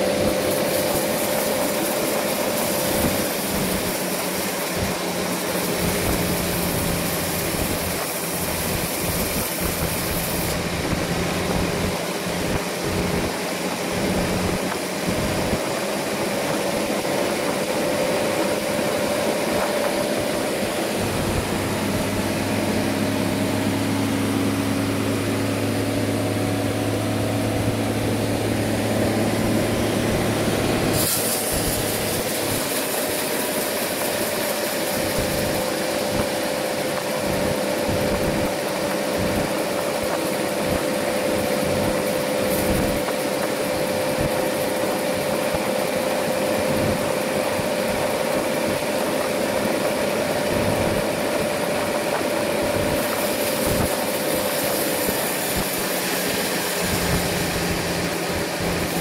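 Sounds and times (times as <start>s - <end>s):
sawmill machinery drone: 0.0s - 59.0s
high hiss: 24.7s - 59.0s.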